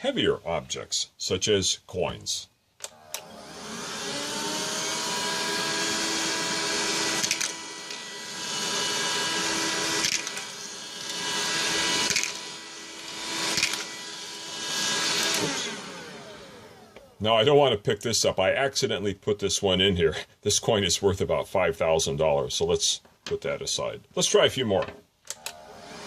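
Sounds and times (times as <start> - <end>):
handheld vacuum cleaner running: 2.8 - 17.2, 25.3 - 26.0
coins being sucked up: 10.0 - 12.4.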